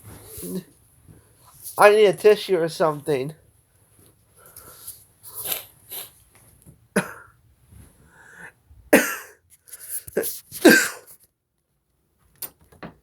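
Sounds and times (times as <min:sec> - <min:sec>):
person sniffing: 0:04.4 - 0:06.2, 0:09.6 - 0:11.2
person clearing throat: 0:06.9 - 0:07.4, 0:09.0 - 0:09.4, 0:10.6 - 0:11.1
person coughing: 0:06.9 - 0:07.4, 0:09.0 - 0:09.4, 0:10.6 - 0:11.2.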